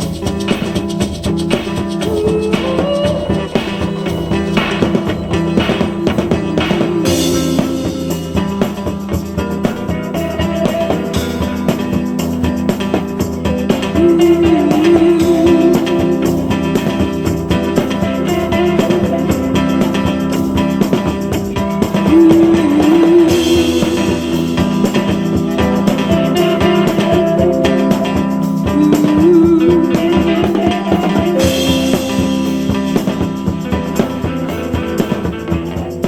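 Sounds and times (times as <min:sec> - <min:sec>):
bent electric guitar notes: 0:00.0 - 0:36.0
rock music: 0:00.0 - 0:36.0
cymbals crashing: 0:01.6 - 0:09.1.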